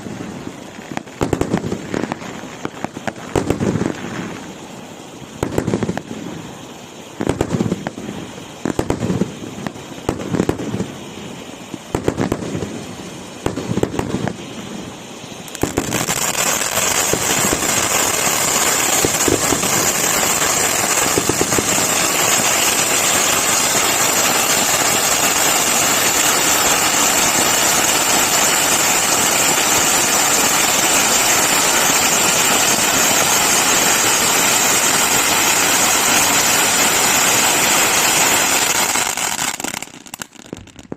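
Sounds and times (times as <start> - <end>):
firework crackling pops: 0.0 - 40.9
hiss of spraying sparks: 15.5 - 40.4.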